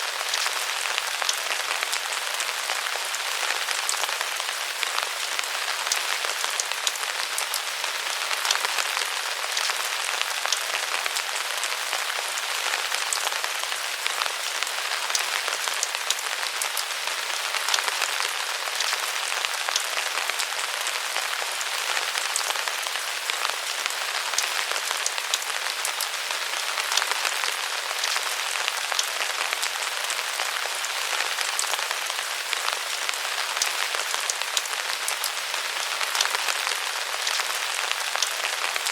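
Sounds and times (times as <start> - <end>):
raindrops ticking and pattering: 0.0 - 38.9
steady rain hiss: 0.0 - 38.9.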